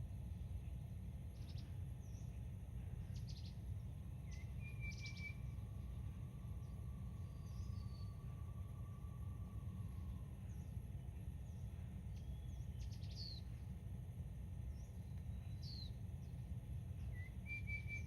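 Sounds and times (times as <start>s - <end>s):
steady low rumble: 0.0s - 18.0s
faint bird chirps: 0.6s - 13.8s, 14.6s - 18.0s
whistled bird note: 4.3s - 5.9s, 17.0s - 18.0s.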